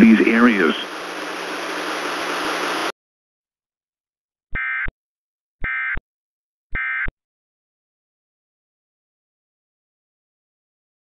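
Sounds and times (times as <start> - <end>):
static hiss: 0.0 - 2.9.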